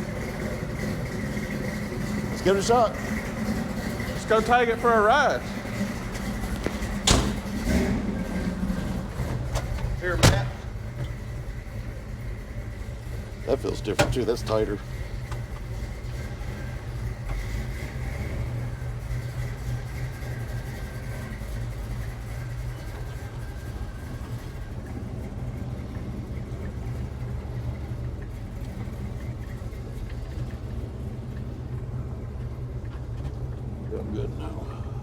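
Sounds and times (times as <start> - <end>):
engine running at low revs: 0.0 - 35.0.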